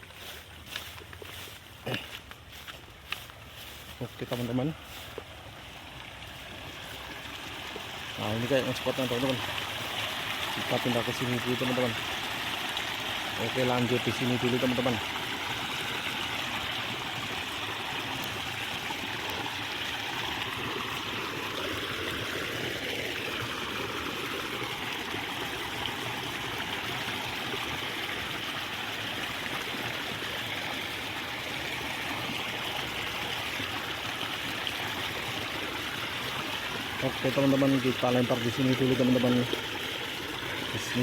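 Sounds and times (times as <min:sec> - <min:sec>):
water rushing in a ditch: 0:00.0 - 0:41.0.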